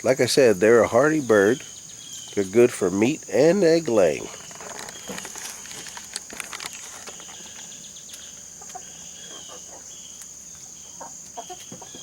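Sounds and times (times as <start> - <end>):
high insect chirring: 0.0 - 12.0
chickens clucking softly: 8.2 - 12.0.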